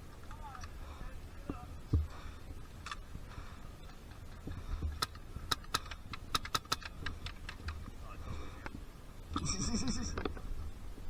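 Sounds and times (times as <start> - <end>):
airsoft gun firing clicks: 5.0 - 7.7.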